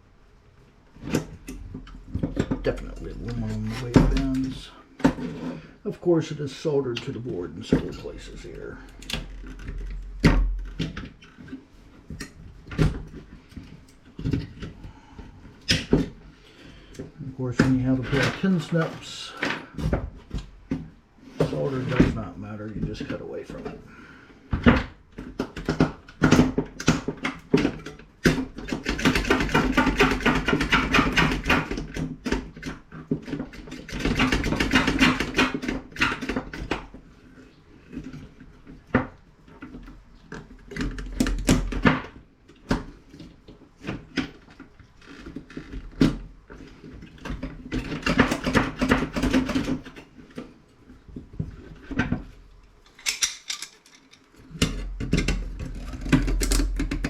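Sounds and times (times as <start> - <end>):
crunching and rattling: 24.6 - 57.0.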